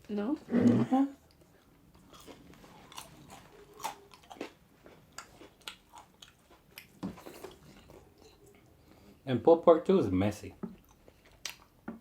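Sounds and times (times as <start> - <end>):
person chewing food: 1.2 - 9.0, 10.6 - 12.0.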